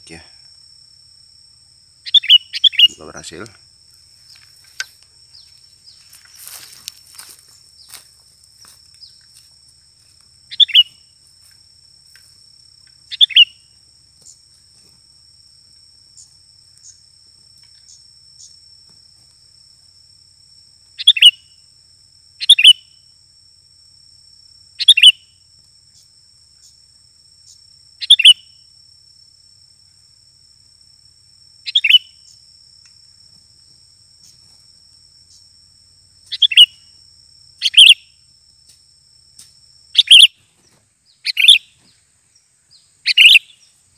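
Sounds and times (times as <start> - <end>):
high insect trill: 0.0 - 43.9
bird calling: 2.0 - 3.6, 10.5 - 11.0, 13.1 - 13.7, 21.0 - 21.4, 22.4 - 22.8, 24.8 - 25.2, 28.0 - 28.4, 31.7 - 32.2, 36.3 - 36.8, 37.6 - 38.0, 40.0 - 42.0, 42.8 - 43.7.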